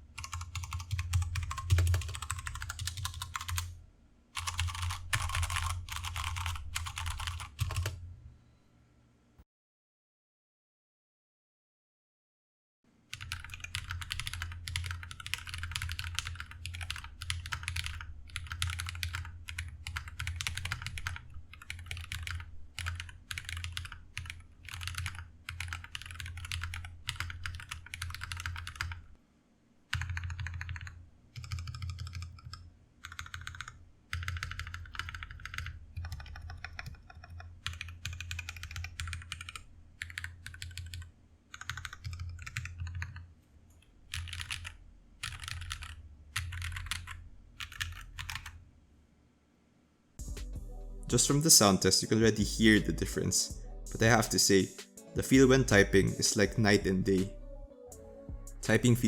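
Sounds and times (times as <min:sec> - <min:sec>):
mechanical keyboard typing: 0:00.2 - 0:03.7, 0:04.4 - 0:08.0, 0:13.1 - 0:29.1, 0:29.9 - 0:43.3, 0:44.1 - 0:48.6.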